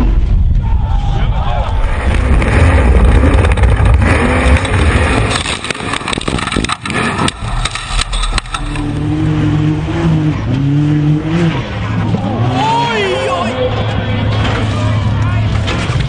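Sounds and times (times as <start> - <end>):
off-road vehicle engine running: 0.0 - 16.0
sharp knocks and clatter: 3.1 - 8.9.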